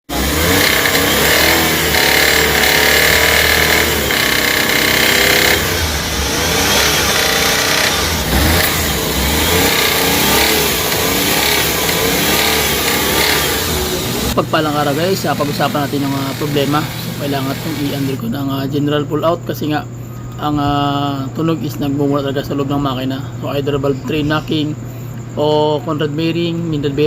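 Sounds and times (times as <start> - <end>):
small engine revving: 0.0 - 18.2.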